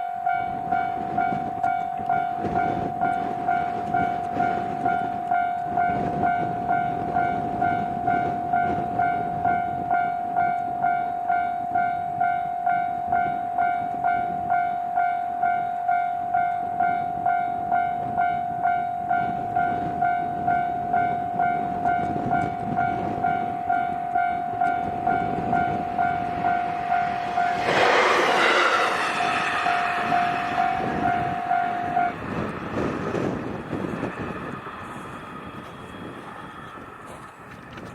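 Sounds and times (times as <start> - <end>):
level-crossing alarm bell ringing: 0.0 - 36.9
diesel railcar rumble: 0.0 - 37.9
loud rushing sound: 25.7 - 34.8.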